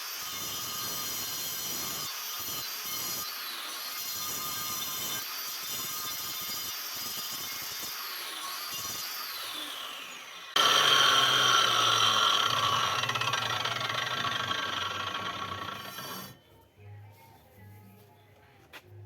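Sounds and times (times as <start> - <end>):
angle grinder spinning down: 9.3 - 16.4.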